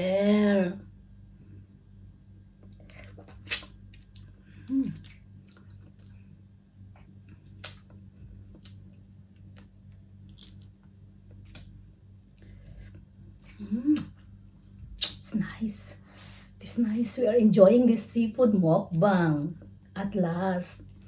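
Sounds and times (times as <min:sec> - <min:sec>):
chewing seafood: 0:02.6 - 0:15.1
person humming: 0:04.7 - 0:05.1, 0:13.6 - 0:14.1.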